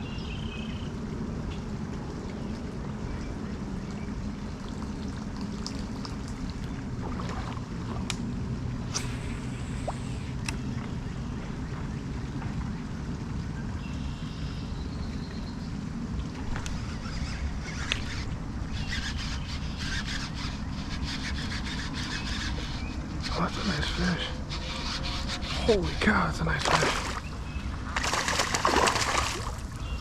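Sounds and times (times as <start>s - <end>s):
moving water rumble: 0.0s - 30.0s
crisp water splashes: 4.4s - 8.3s, 25.5s - 30.0s.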